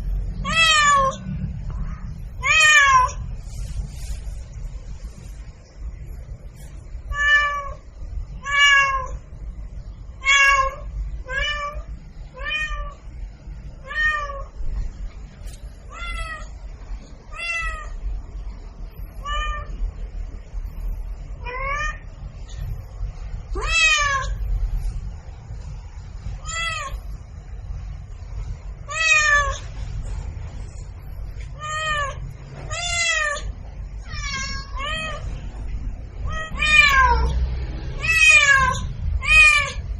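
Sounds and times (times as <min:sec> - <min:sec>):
low steady rumble: 0:00.0 - 0:39.9
cat meowing: 0:00.4 - 0:01.2, 0:02.4 - 0:03.2, 0:07.1 - 0:07.8, 0:08.4 - 0:09.2, 0:10.2 - 0:13.0, 0:13.8 - 0:14.6, 0:15.9 - 0:16.6, 0:17.3 - 0:18.0, 0:19.2 - 0:19.8, 0:21.4 - 0:22.1, 0:23.5 - 0:24.4, 0:26.4 - 0:27.0, 0:28.9 - 0:29.7, 0:31.5 - 0:35.3, 0:36.2 - 0:37.4, 0:38.0 - 0:39.9.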